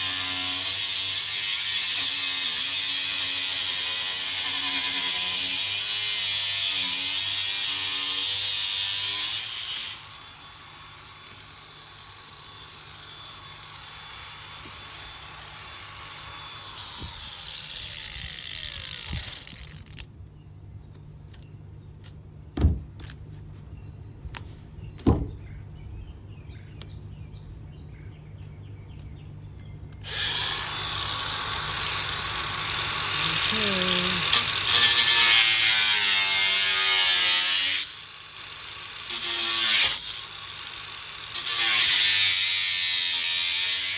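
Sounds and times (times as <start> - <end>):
power tool running: 0.0 - 20.1, 30.0 - 43.9.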